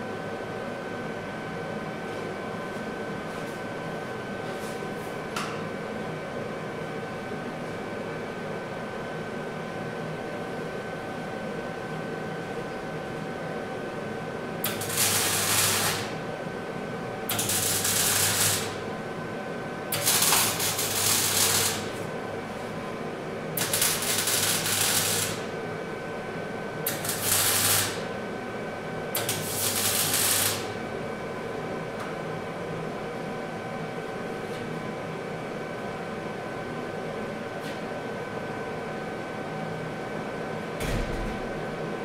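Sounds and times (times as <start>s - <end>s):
welding crackle and buzz: 14.6s - 16.2s, 17.3s - 18.9s, 19.9s - 22.1s, 23.6s - 25.6s, 26.8s - 28.1s, 29.1s - 30.8s.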